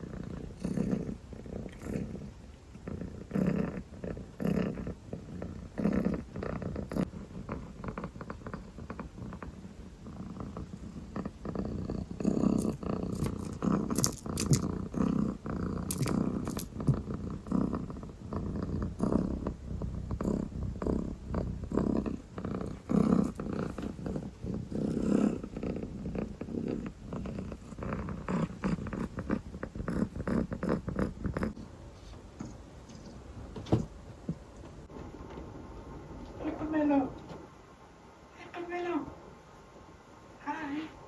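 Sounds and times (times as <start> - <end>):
kitten purring: 0.0 - 31.6.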